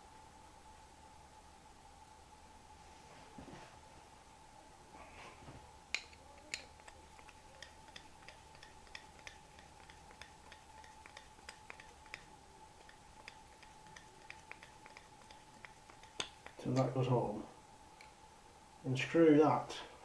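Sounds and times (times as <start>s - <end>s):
screw clicking and tapping: 5.9s - 16.9s.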